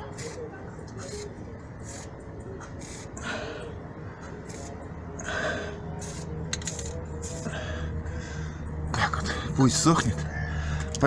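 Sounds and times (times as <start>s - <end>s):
aerosol paint can spraying: 1.0s - 2.1s, 2.8s - 3.1s, 4.5s - 4.7s, 6.0s - 7.4s.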